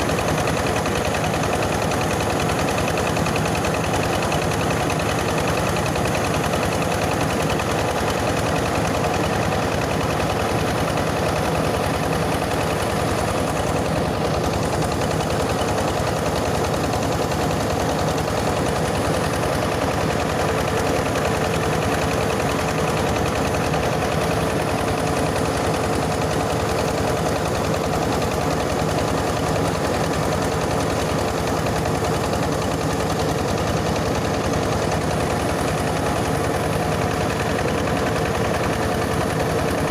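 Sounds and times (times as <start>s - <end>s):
diesel engine running under load: 0.0s - 39.9s
rice huller milling grain: 0.0s - 39.9s.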